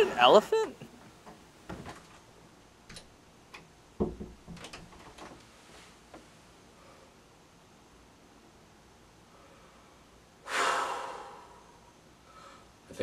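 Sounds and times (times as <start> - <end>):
soft knocks and clicks: 2.9 - 5.4.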